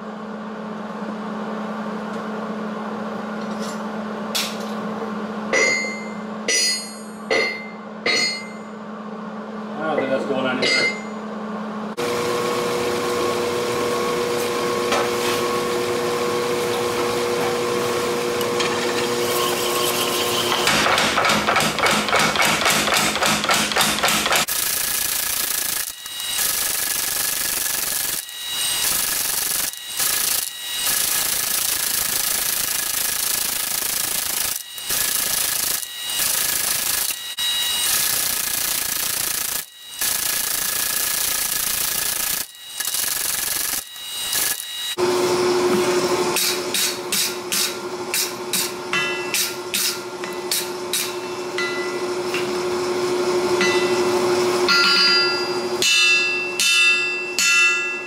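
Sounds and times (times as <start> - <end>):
ringing metal strikes: 5.5 - 8.8, 9.9 - 11.2, 48.9 - 52.6, 53.5 - 58.0
power hammer pounding steel: 5.6 - 8.6, 18.6 - 26.0, 46.4 - 52.5, 53.6 - 58.0.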